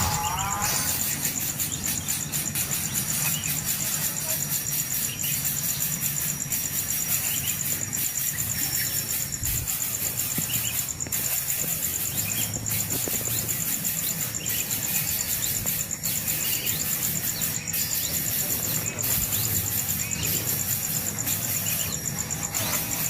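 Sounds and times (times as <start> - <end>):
high-pitched pulsing insect trill: 0.0 - 23.0.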